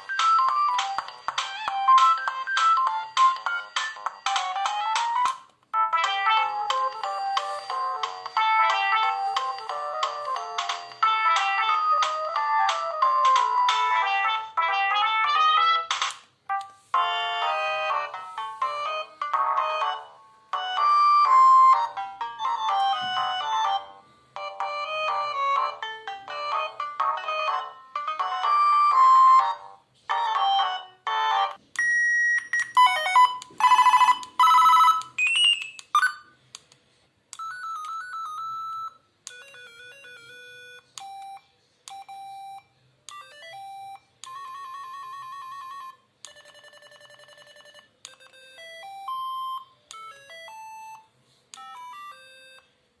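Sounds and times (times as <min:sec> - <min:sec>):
mobile phone alert tones: 0:06.2 - 0:14.1, 0:30.3 - 0:36.3, 0:37.4 - 0:52.7
electronic beeps: 0:31.8 - 0:36.3.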